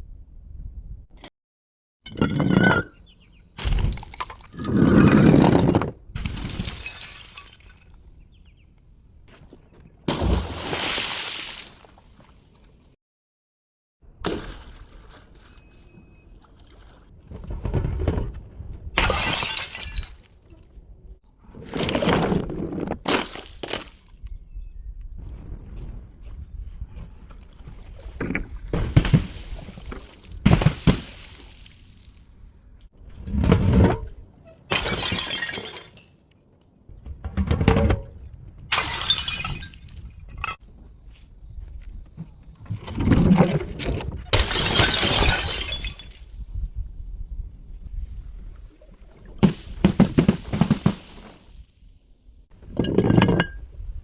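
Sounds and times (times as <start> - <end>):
glass bottle shattering: 3.6 - 5.0, 6.2 - 8.0, 19.0 - 20.4, 30.5 - 31.7, 34.7 - 36.2, 38.7 - 40.6, 44.3 - 46.4.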